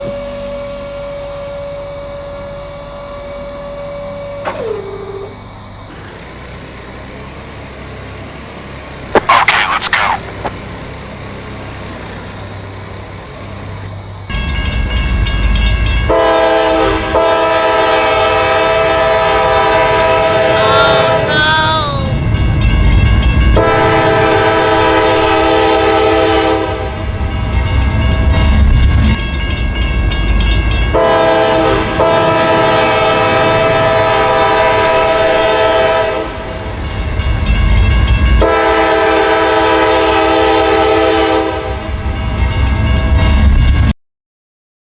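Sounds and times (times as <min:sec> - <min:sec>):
train rumbling: 0:00.0 - 0:44.0
train horn blasts: 0:16.0 - 0:21.4, 0:23.5 - 0:27.1, 0:30.9 - 0:36.6, 0:38.3 - 0:41.9.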